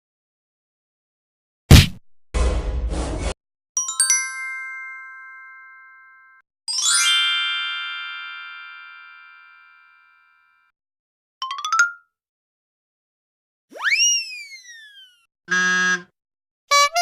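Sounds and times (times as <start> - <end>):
tinkling bell notes: 3.8 - 10.7.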